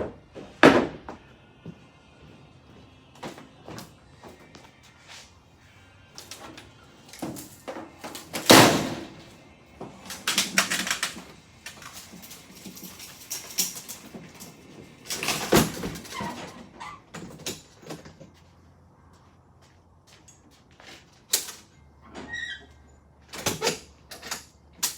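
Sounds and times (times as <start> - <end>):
knocks bangs and clatters: 8.4 - 9.2
short squeak: 22.1 - 22.9.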